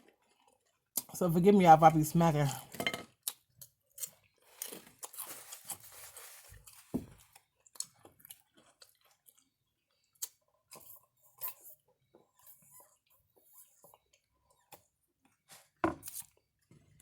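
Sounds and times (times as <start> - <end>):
person chewing with mouth smacks: 6.6 - 15.4.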